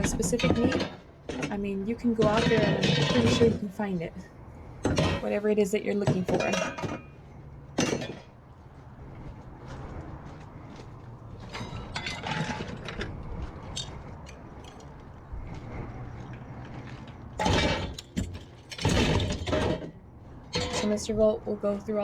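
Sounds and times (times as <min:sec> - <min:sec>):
scrap metal clinking and rattling: 0:00.0 - 0:04.2, 0:04.8 - 0:08.4, 0:11.3 - 0:15.1, 0:16.3 - 0:21.2
metal clattering: 0:00.0 - 0:08.4, 0:11.4 - 0:15.0, 0:17.4 - 0:21.1.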